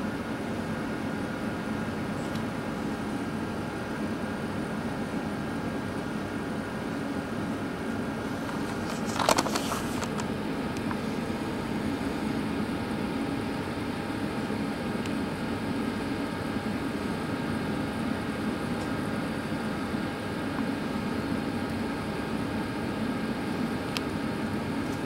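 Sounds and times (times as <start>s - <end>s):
steady mechanical hum: 0.0s - 25.0s
clatter of clicks: 8.4s - 11.0s.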